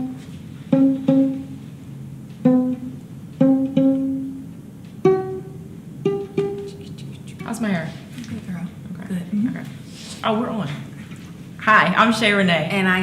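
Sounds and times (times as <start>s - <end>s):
violin strings plucked pizzicato: 0.0s - 7.5s.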